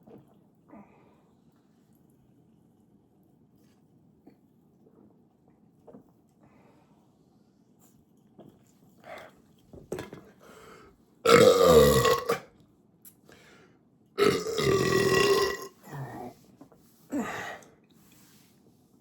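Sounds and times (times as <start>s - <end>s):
man belching: 11.3s - 12.4s, 14.2s - 15.7s.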